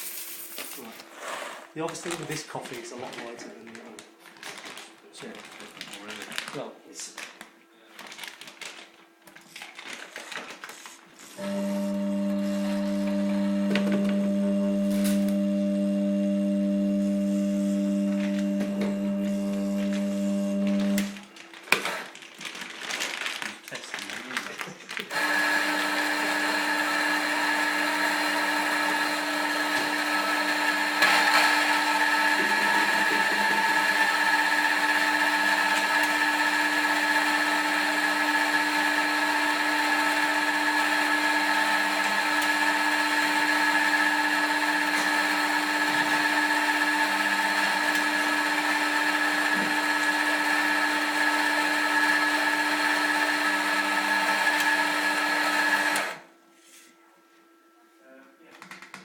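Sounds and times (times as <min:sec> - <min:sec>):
coffee grinder grinding beans: 0:00.0 - 0:07.2, 0:09.6 - 0:56.2
grinder crackle: 0:00.0 - 0:07.2, 0:18.0 - 0:56.2.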